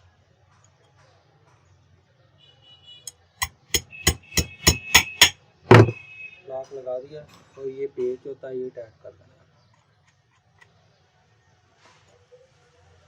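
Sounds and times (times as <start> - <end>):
hammer tapping metal: 3.4 - 6.0.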